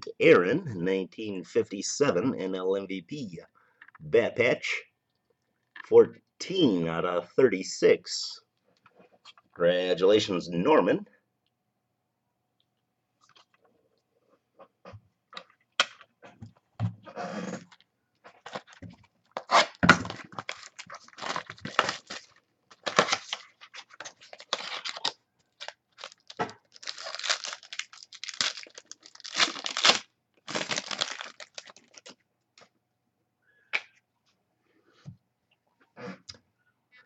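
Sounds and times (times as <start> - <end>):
card pack wrappers tearing and crinkling: 18.4 - 32.2.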